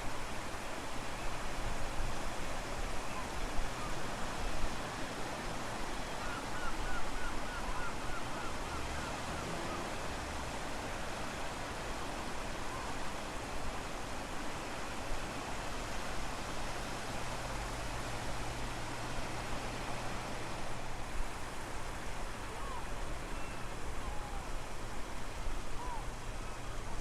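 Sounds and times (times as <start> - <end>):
ocean surf: 1.9 - 27.0.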